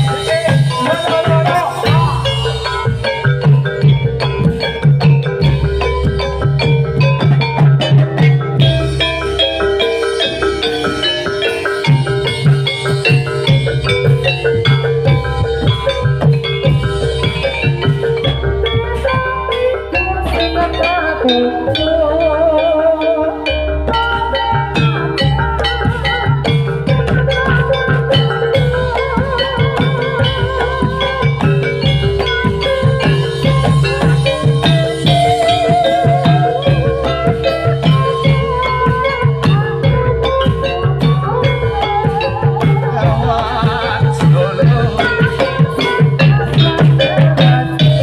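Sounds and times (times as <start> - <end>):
ringing tuned percussion: 0.0 - 48.0
wavering vibrato melody: 0.0 - 48.0
hand drum strokes: 23.7 - 48.0.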